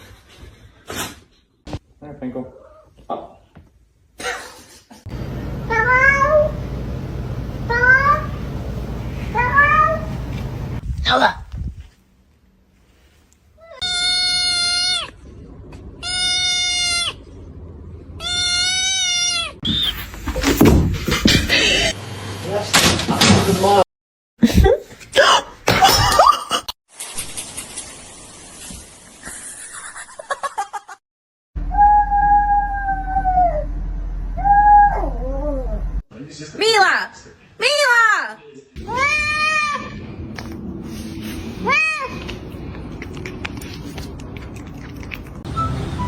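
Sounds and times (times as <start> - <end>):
steady low hum: 5.1 - 10.8.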